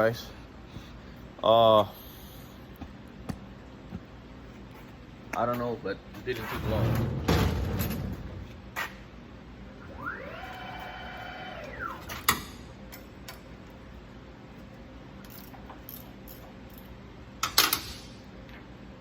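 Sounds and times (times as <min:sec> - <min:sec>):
milling machine motor whining: 0:09.8 - 0:12.4.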